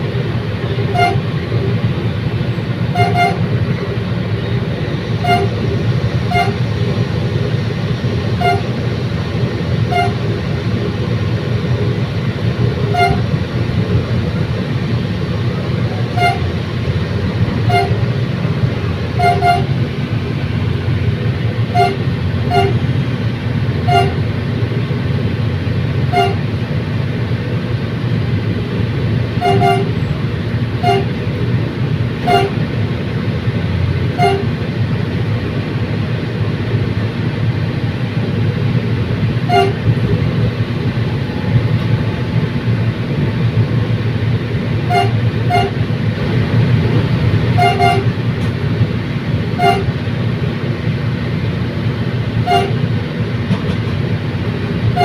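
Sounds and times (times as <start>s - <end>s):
train rumbling: 0.0s - 55.0s
short pitched train toots: 0.8s - 1.4s, 2.9s - 3.6s, 5.2s - 6.7s, 8.3s - 8.8s, 9.8s - 10.3s, 12.9s - 13.4s, 15.9s - 16.7s, 17.6s - 18.1s, 19.1s - 19.8s, 21.6s - 22.9s, 23.8s - 24.4s, 26.1s - 26.5s, 29.4s - 30.2s, 30.8s - 31.2s, 32.2s - 32.7s, 34.1s - 34.6s, 39.4s - 39.9s, 44.8s - 45.8s, 47.5s - 48.2s, 49.5s - 50.0s, 52.4s - 52.9s.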